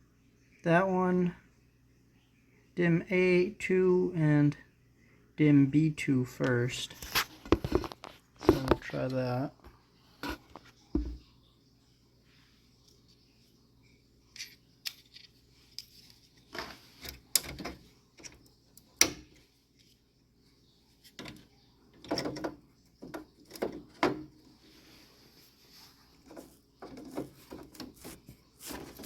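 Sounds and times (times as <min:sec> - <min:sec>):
plastic computer parts clicking: 0:14.4 - 0:20.0.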